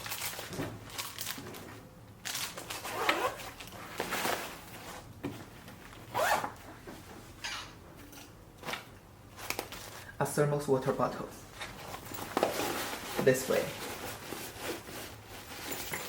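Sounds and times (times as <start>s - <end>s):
backpack fabric rustling: 6.1s - 6.6s
things sliding into backpack: 6.2s - 6.4s.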